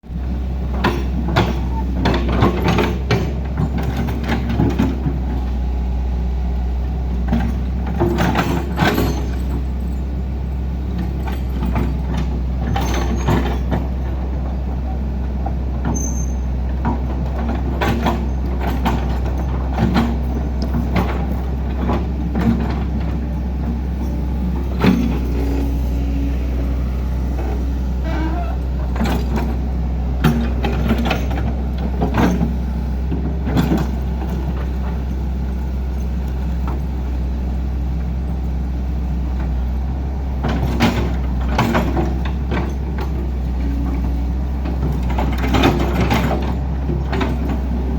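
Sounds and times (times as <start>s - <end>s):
diesel machinery rumbling: 0.0s - 47.9s
knocks and clanks: 15.4s - 25.7s.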